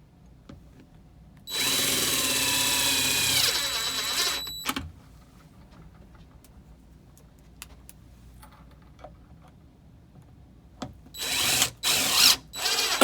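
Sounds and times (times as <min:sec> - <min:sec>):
power drill whining: 0:01.5 - 0:04.6, 0:11.2 - 0:13.0
drill clicks: 0:01.5 - 0:04.7, 0:11.2 - 0:13.0.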